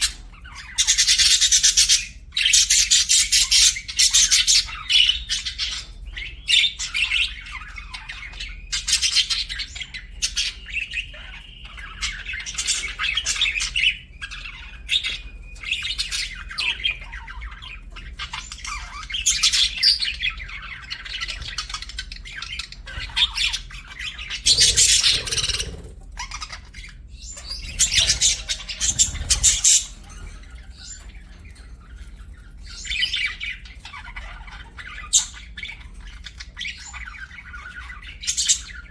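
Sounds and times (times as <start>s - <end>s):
budgerigars chirping: 0.0s - 38.9s
harsh budgerigar squawks: 20.9s - 30.3s.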